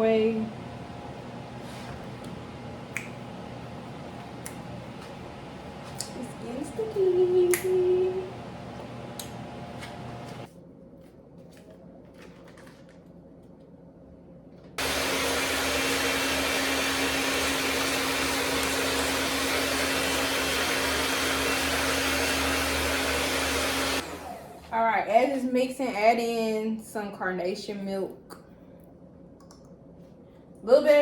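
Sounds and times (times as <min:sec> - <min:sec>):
electric mixer running: 0:00.0 - 0:10.5, 0:14.8 - 0:24.8.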